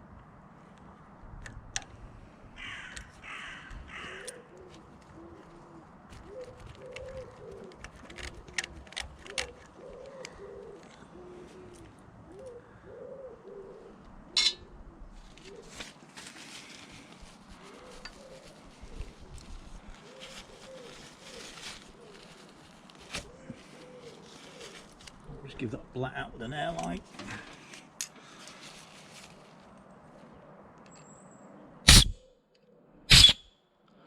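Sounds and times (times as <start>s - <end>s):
pigeon cooing: 2.6s - 15.8s, 17.6s - 22.6s, 23.2s - 25.6s.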